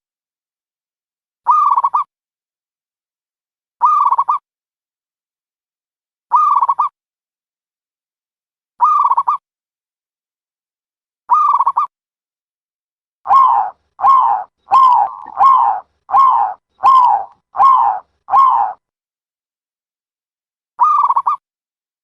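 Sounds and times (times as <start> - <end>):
dove cooing: 13.3 - 18.8.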